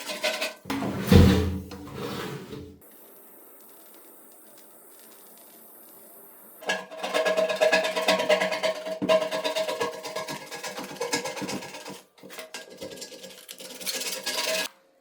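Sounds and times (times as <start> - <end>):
faint hiss with ticks: 2.8 - 6.8.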